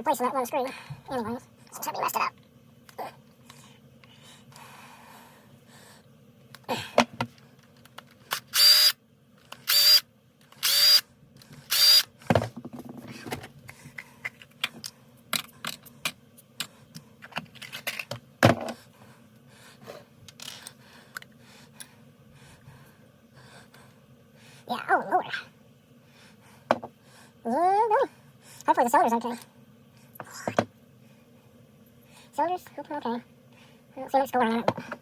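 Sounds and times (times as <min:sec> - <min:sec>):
cordless drill whirring: 0:08.3 - 0:09.0, 0:09.6 - 0:10.0, 0:10.6 - 0:11.0, 0:11.7 - 0:12.1.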